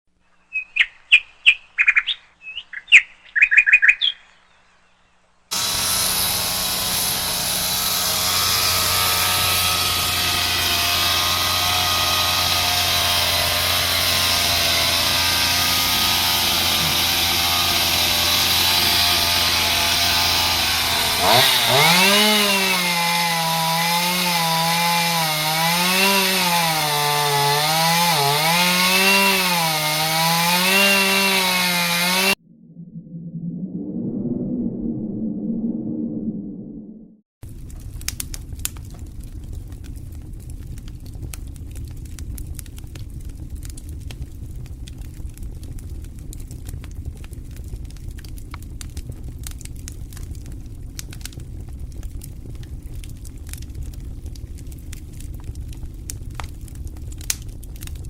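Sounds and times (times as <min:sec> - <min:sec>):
birds chirping: 0:00.2 - 0:05.5
chainsaw running: 0:05.5 - 0:32.4.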